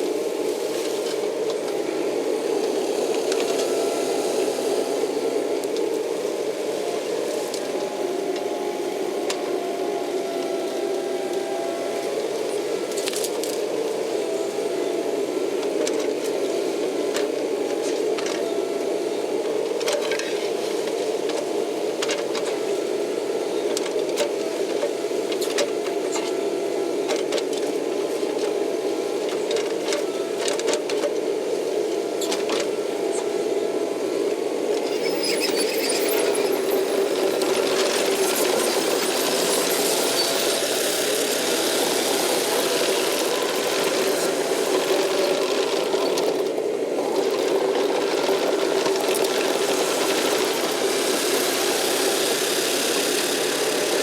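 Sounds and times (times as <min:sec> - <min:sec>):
hiss: 0:34.8 - 0:46.4, 0:47.1 - 0:54.0
excavator diesel engine running: 0:34.8 - 0:54.0.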